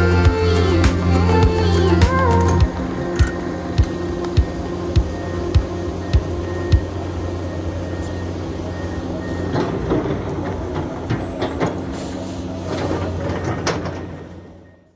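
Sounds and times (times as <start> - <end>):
diesel machinery running: 0.0 - 14.9
metallic knocks and clatter: 12.7 - 14.4.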